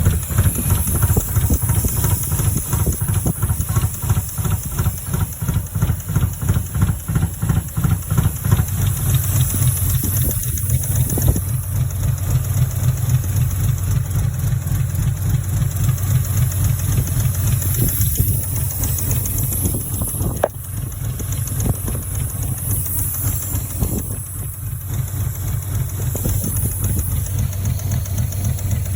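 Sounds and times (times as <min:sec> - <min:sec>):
car engine idling roughly: 0:00.0 - 0:28.9
small engine knocks: 0:15.0 - 0:28.9.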